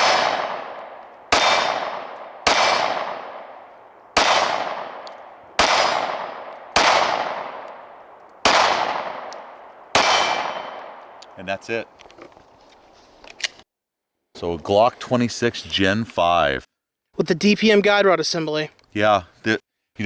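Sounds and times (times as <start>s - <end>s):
pistol shots: 0.0s - 11.5s.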